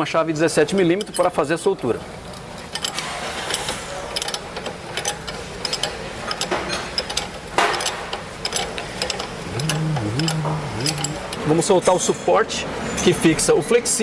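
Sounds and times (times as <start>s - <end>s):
metallic wrench clicks and clinks: 2.7s - 11.4s.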